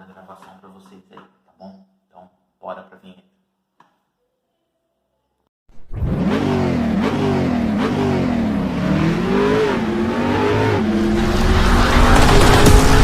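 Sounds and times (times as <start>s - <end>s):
car engine revving: 5.8s - 13.0s.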